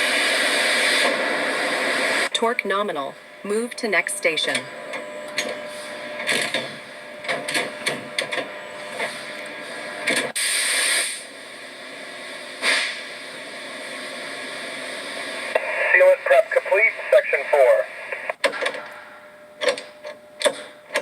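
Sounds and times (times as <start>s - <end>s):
factory background hum: 0.0s - 21.0s
air hissing: 9.0s - 11.4s, 12.2s - 15.4s.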